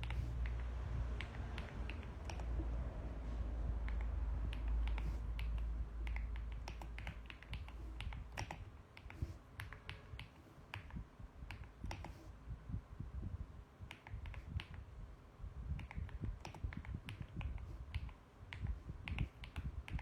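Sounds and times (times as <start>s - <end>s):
mechanical keyboard typing: 0.0s - 2.8s, 3.8s - 12.3s, 15.8s - 20.0s
low rumble: 0.0s - 7.2s.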